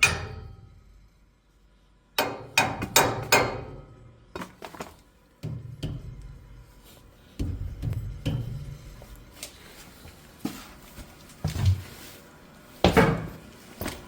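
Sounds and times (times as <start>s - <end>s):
metal tool knocking on boiler drain: 2.2s - 4.5s, 5.4s - 6.6s, 7.4s - 9.0s.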